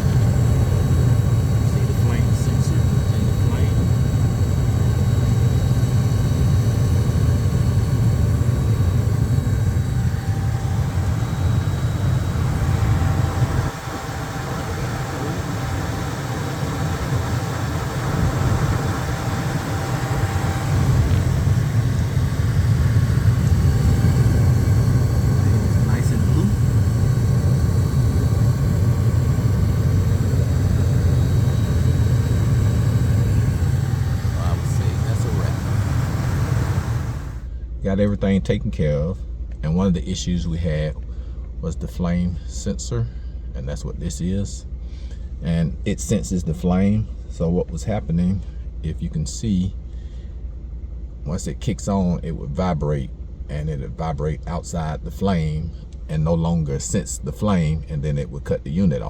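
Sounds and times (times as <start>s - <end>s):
gas furnace rumbling: 0.0s - 37.6s
faint high whine: 0.0s - 50.2s
quiet steady hum: 0.0s - 59.0s.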